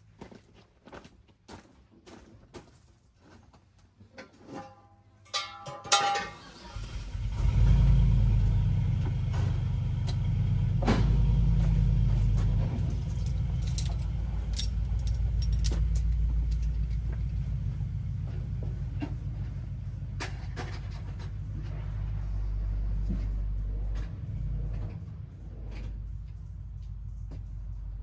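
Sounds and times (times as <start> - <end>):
car engine starting and idling: 6.0 - 28.0.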